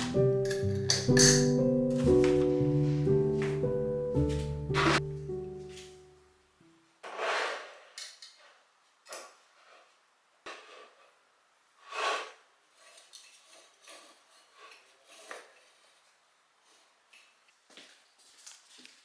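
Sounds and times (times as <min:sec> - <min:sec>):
dishes and utensils clinking: 0:00.0 - 0:02.5.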